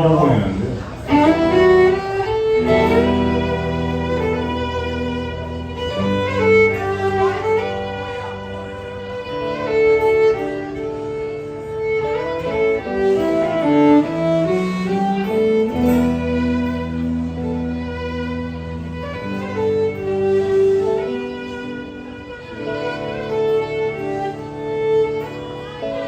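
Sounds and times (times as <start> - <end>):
country band chords and bass: 0.0 - 11.1
fiddle melody: 0.0 - 26.0.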